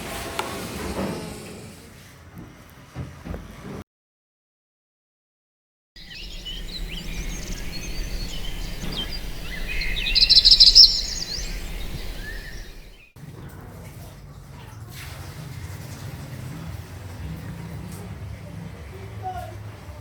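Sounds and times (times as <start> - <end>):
birds chirping: 6.0 - 13.1
low hum: 6.0 - 13.1.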